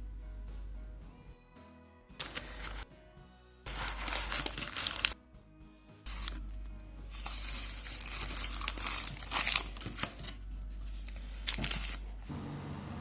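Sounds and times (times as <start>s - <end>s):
packaging crinkling: 3.7s - 5.2s, 7.1s - 12.2s.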